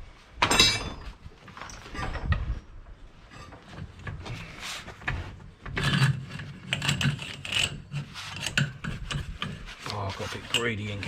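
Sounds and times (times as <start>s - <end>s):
steel scraping against steel: 5.8s - 11.0s.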